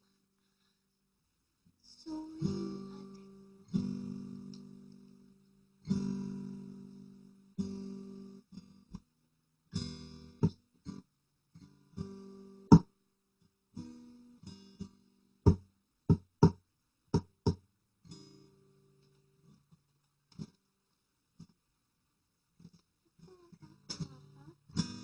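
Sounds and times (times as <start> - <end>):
acoustic guitar strumming: 2.4 - 8.8, 9.7 - 11.0, 23.5 - 25.0.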